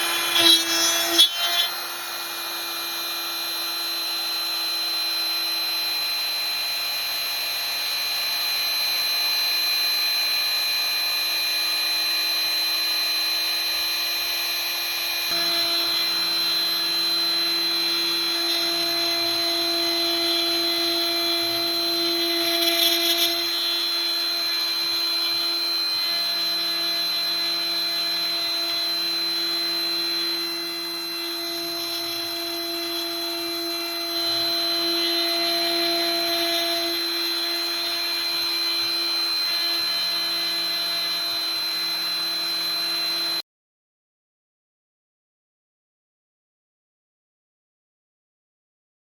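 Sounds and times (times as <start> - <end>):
router spindle whine: 0.0 - 43.4
stepper motor tones: 15.3 - 43.4.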